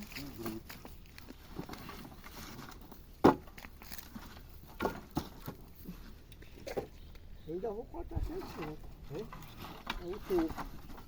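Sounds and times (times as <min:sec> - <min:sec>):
firewood knocking on wooden cart: 0:03.2 - 0:03.6, 0:04.7 - 0:05.6.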